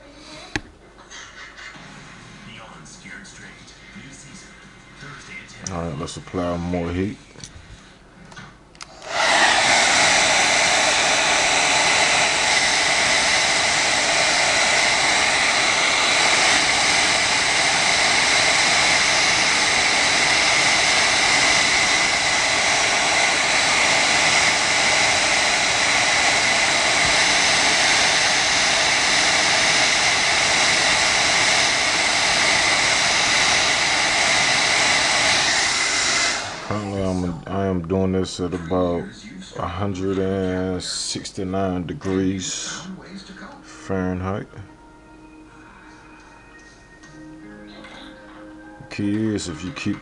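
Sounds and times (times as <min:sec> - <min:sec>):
hair dryer blowing: 0:08.8 - 0:37.8.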